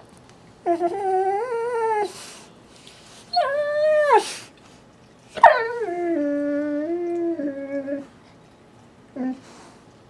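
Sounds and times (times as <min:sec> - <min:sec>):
pet howling: 0:03.3 - 0:04.5, 0:05.4 - 0:08.1.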